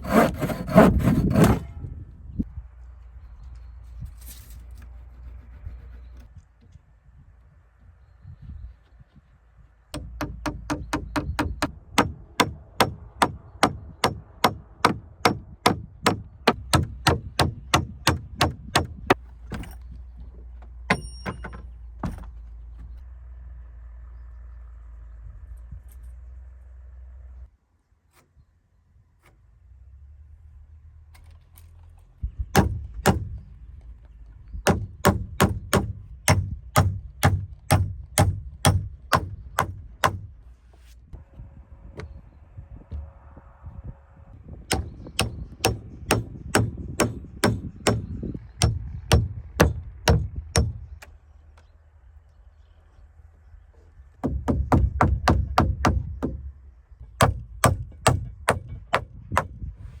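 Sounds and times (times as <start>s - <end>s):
hammer striking timber: 0.0s - 1.7s, 10.0s - 19.6s, 20.9s - 22.3s, 32.5s - 33.5s, 34.6s - 40.3s, 44.7s - 50.9s, 54.2s - 56.5s, 57.1s - 59.6s.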